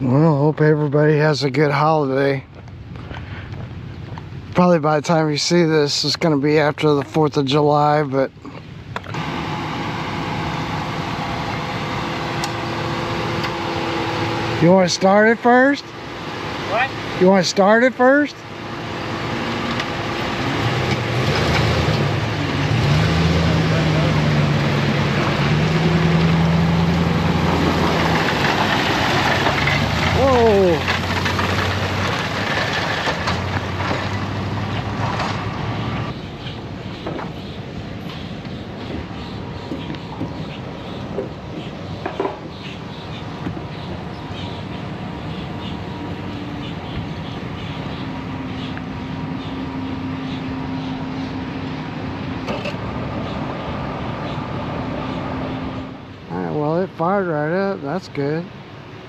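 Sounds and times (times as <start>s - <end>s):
outboard motor humming: 9.1s - 31.2s.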